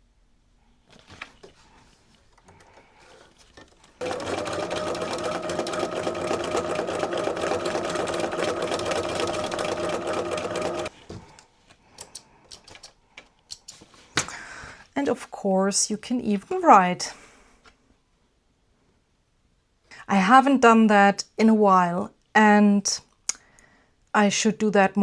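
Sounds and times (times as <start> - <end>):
sewing machine stitching: 2.4 - 10.9.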